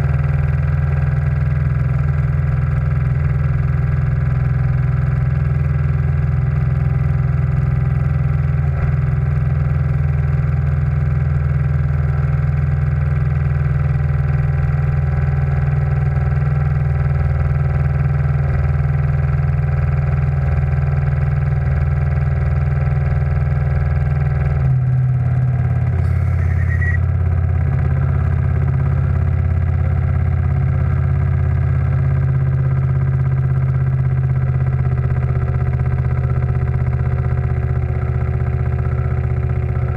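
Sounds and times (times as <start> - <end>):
steam engine and boiler hum: 25.8 - 27.2.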